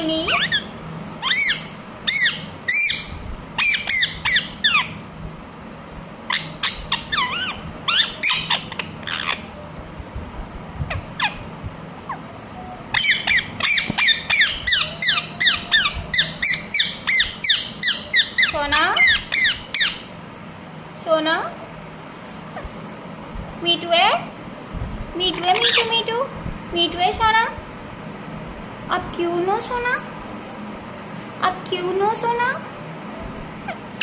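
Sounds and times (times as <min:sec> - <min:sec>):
parakeet squawking: 0:00.0 - 0:05.0, 0:06.3 - 0:09.5, 0:10.9 - 0:11.5, 0:12.1 - 0:20.1, 0:25.3 - 0:26.0.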